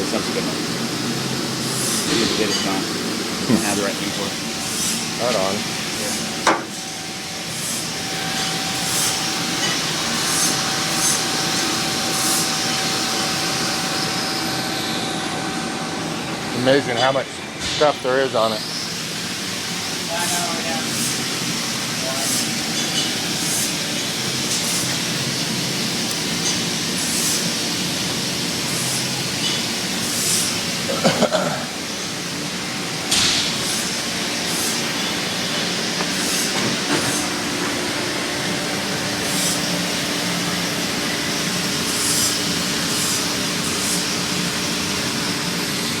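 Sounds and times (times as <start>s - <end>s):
faint regular hissing: 33.4s - 37.5s.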